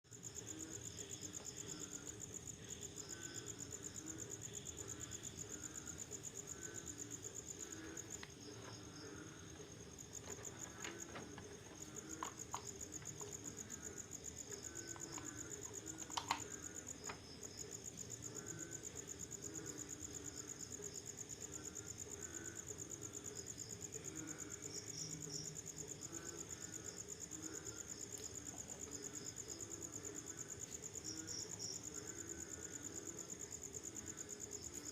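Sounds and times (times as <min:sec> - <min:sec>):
crickets trilling: 0:00.1 - 0:34.9
frogs calling: 0:02.8 - 0:20.2
sharp clicks: 0:14.9 - 0:17.2.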